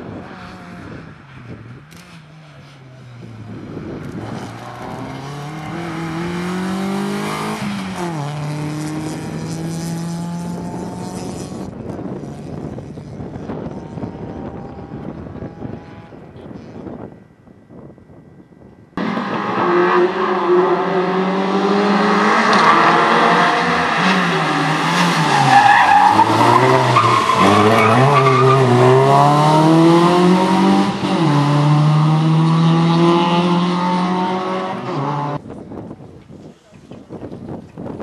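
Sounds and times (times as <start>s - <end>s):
racing car engine accelerating: 4.0s - 11.7s, 19.0s - 35.4s.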